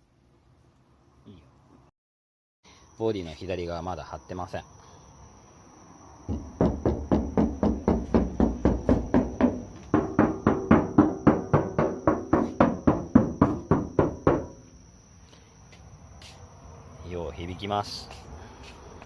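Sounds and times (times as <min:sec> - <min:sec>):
knocking on hollow sheet metal: 0:06.3 - 0:14.8.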